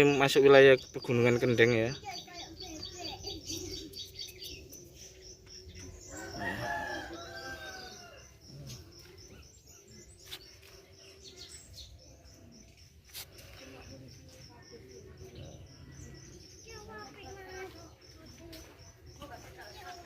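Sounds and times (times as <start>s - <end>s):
rooster crowing: 6.1s - 8.3s.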